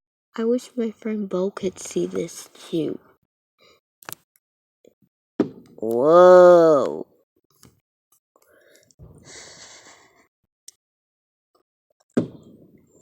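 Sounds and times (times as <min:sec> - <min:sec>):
child exclaiming: 0:05.8 - 0:07.0.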